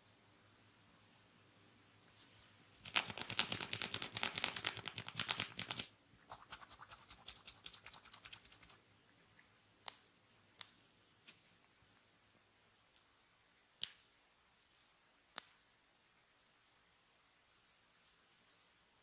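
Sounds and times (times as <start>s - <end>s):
hands scratching through hair: 2.8s - 8.8s.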